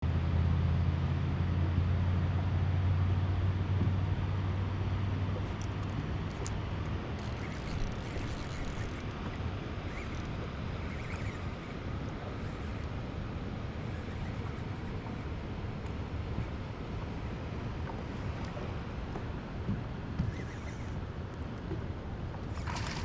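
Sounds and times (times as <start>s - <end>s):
low motor hum: 0.0s - 23.0s.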